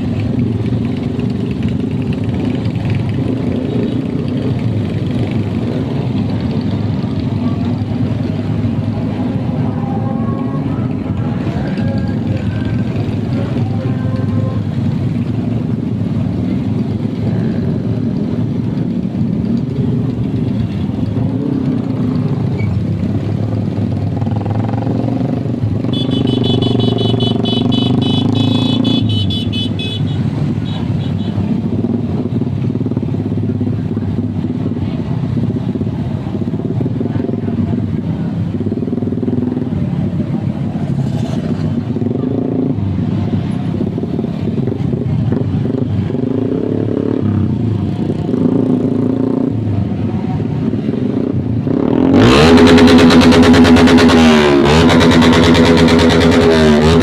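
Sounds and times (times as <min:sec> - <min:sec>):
engine with crackling exhaust: 0:00.0 - 0:57.0.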